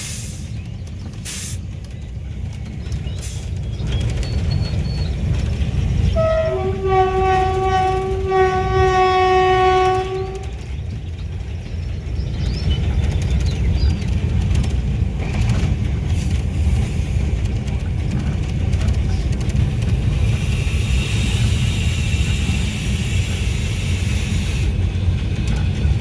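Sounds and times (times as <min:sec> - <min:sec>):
locomotive low rumble: 0:00.0 - 0:26.0.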